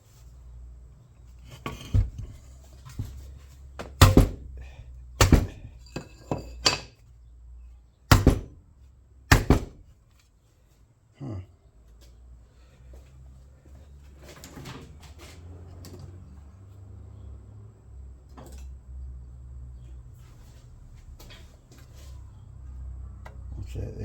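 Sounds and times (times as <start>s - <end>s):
hand tools knocking on metal: 3.8s - 4.5s, 8.1s - 8.5s.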